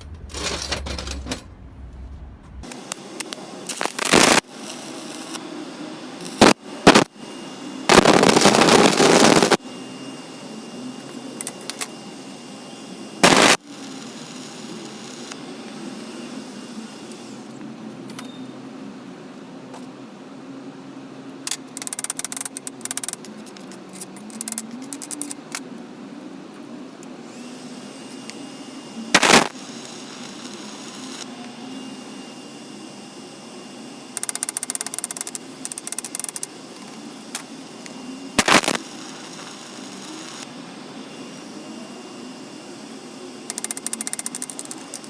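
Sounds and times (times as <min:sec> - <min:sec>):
rapid rattling clicks: 0:21.5 - 0:25.4, 0:43.5 - 0:45.0
small motor running: 0:34.0 - 0:40.5, 0:41.2 - 0:45.0.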